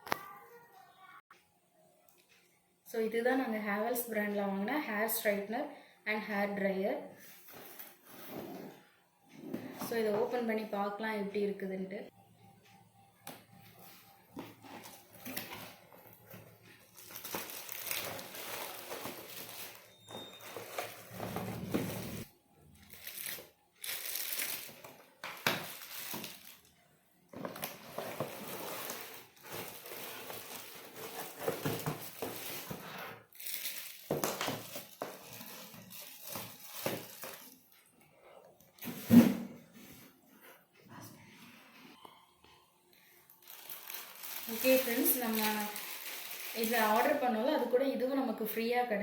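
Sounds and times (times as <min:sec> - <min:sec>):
cardboard and wrapping crinkling: 0:13.8 - 0:37.9, 0:43.3 - 0:47.6.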